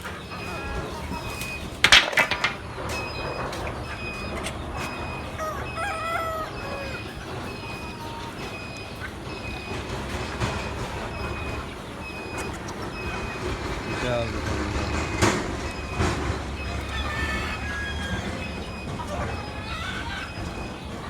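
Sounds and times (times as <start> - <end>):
sharp clatter: 1.4 - 3.7
rooster crowing: 4.8 - 8.7, 16.4 - 20.8.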